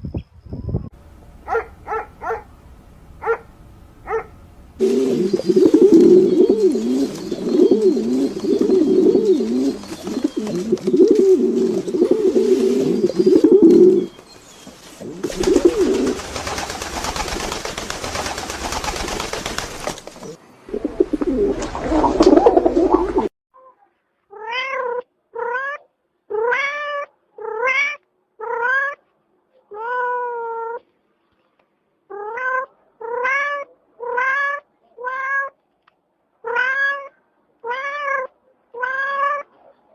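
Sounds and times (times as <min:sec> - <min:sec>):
jumble of lower-pitched sounds: 0:04.8 - 0:14.1, 0:20.7 - 0:23.3
cat meowing: 0:36.4 - 0:39.5.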